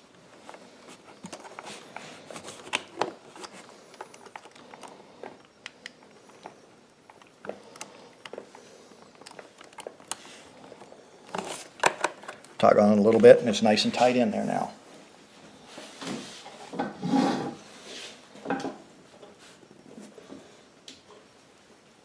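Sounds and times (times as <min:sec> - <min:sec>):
plastic connectors clicking: 0:09.1 - 0:12.6.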